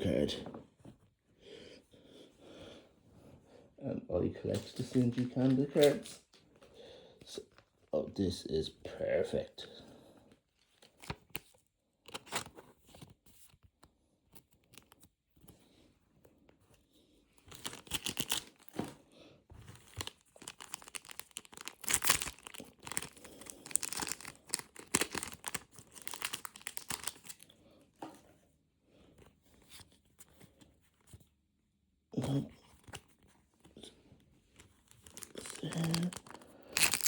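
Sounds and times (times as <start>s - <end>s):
plastic packaging crinkling and tearing: 4.6s - 6.4s, 10.7s - 12.6s, 17.5s - 18.9s, 19.6s - 27.4s, 34.6s - 37.0s.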